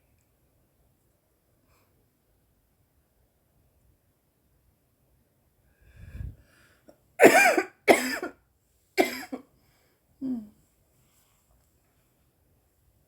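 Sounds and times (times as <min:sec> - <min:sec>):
low rumble of air: 0:05.8 - 0:06.4
woman coughing harshly: 0:07.2 - 0:08.4, 0:09.0 - 0:09.4.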